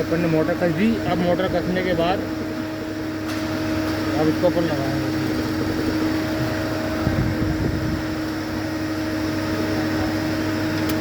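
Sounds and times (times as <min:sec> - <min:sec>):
steady machine hum: 0:00.0 - 0:11.0.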